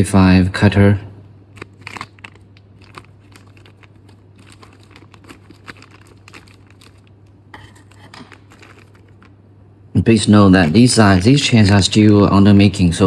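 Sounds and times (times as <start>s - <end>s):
steady low hum: 0.0s - 13.0s
chainsaw chain clicking and crinkling: 1.6s - 9.3s, 10.6s - 13.0s.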